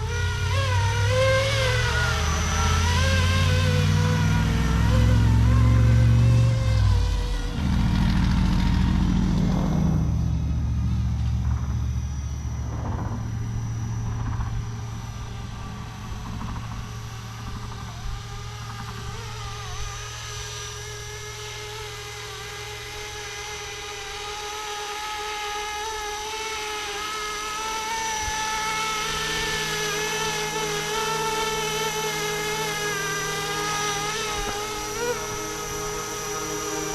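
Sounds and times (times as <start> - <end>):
low rumble: 0.0 - 21.9
rc helicopter rotor whine: 0.0 - 36.9.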